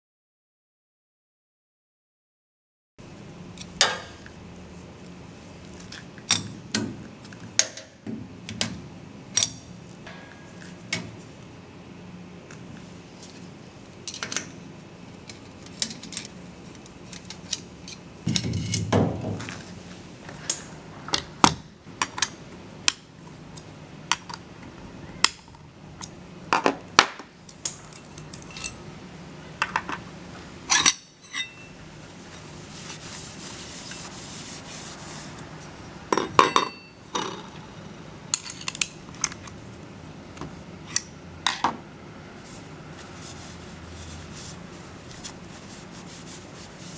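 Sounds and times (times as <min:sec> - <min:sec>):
metal clinking and scraping: 0:17.0 - 0:19.5
metal clatter: 0:18.3 - 0:19.5.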